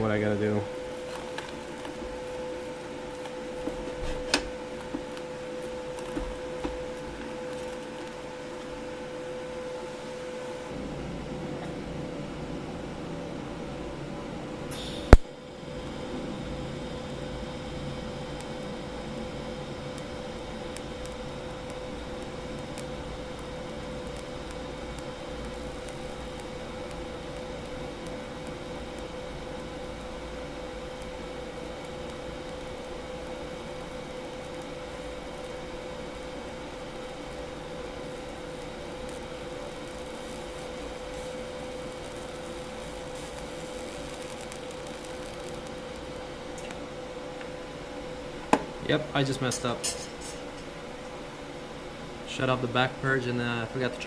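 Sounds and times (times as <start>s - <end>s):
welding machine and fan humming: 0.0s - 54.0s
sharp loud click: 14.7s - 15.3s.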